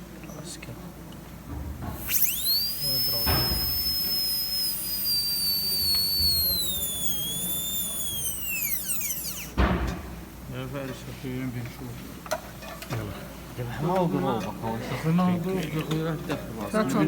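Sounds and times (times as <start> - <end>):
dental drill high-pitched whine: 1.8 - 10.2.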